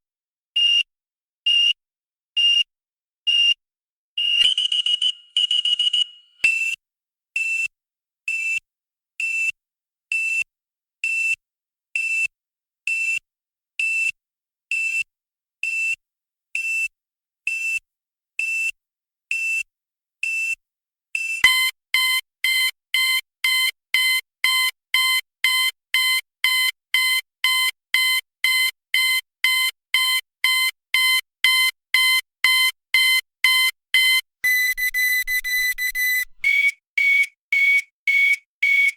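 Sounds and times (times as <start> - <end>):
electronic alarm beeping: 21.4 - 38.9.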